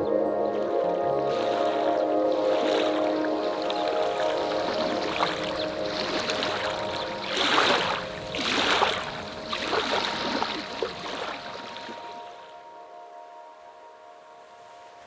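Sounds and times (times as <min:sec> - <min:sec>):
soft sustained music tones: 0:00.0 - 0:15.0
water splashing: 0:00.6 - 0:12.6.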